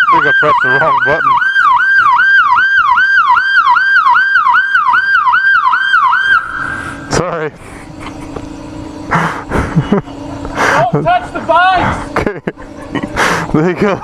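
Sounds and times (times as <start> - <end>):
motorcycle siren yelping: 0.0 - 7.4
low steady hum: 0.0 - 14.0.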